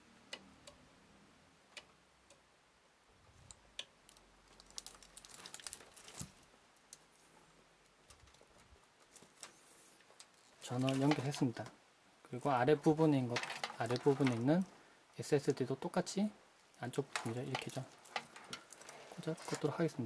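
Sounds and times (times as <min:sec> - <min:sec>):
plastic handling noise: 0:03.4 - 0:11.8, 0:12.6 - 0:14.8, 0:16.8 - 0:20.0.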